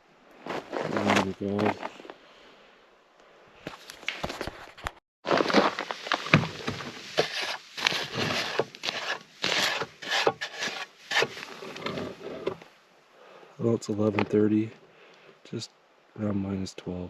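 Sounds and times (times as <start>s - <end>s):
footsteps crunching through snow: 0.4s - 2.1s, 3.7s - 12.4s.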